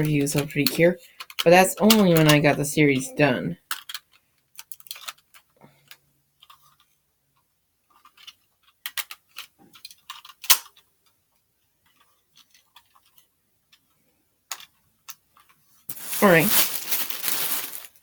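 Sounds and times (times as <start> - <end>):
plastic toy packaging clicks: 0.0 - 2.4, 3.6 - 7.0, 7.9 - 10.9, 14.5 - 15.6.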